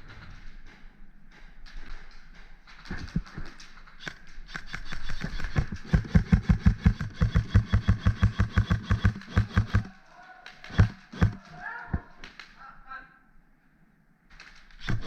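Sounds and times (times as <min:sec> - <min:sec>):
airsoft gun firing: 0:04.0 - 0:10.0, 0:10.6 - 0:11.6, 0:14.7 - 0:15.0.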